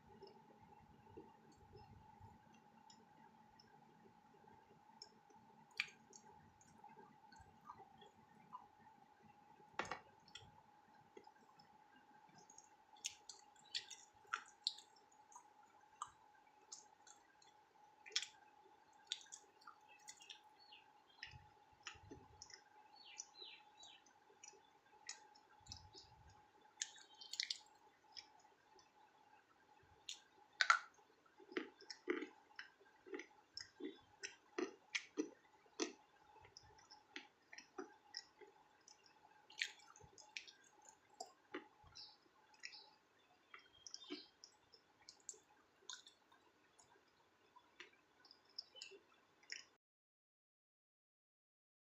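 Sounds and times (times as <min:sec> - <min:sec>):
crunchy food being eaten: 0:12.4 - 0:17.2, 0:26.8 - 0:28.4, 0:30.1 - 0:42.0, 0:43.5 - 0:46.2.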